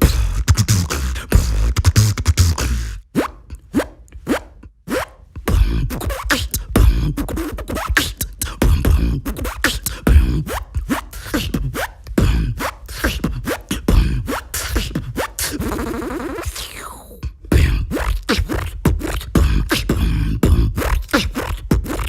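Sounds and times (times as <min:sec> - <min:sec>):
person beatboxing: 0:00.0 - 0:22.0.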